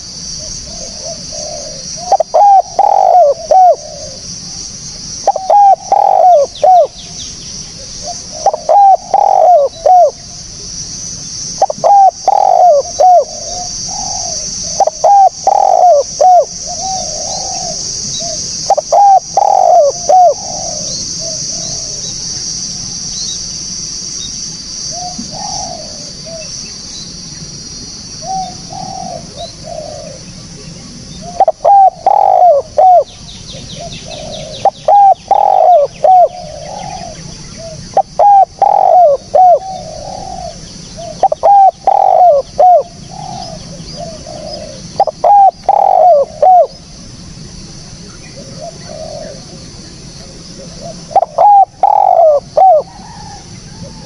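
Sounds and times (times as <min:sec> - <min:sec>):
dove cooing: 0:00.0 - 0:04.6, 0:05.2 - 0:10.4, 0:11.0 - 0:22.9, 0:24.9 - 0:26.6, 0:28.2 - 0:46.8, 0:48.2 - 0:54.0
steady high hiss: 0:00.0 - 0:54.0.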